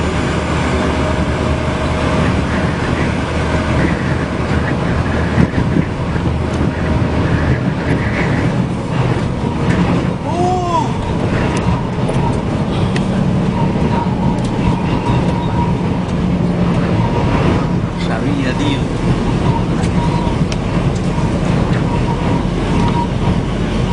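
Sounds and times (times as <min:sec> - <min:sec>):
vehicle road and engine noise: 0:00.0 - 0:23.9.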